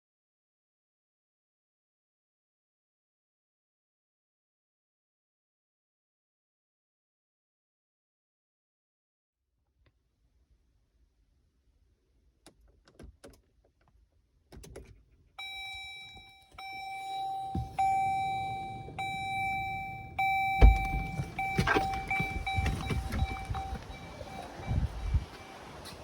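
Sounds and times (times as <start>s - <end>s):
key clicks: 15.4s - 24.6s
car electronic warning tone: 15.4s - 25.9s
loud thump: 19.0s - 23.8s.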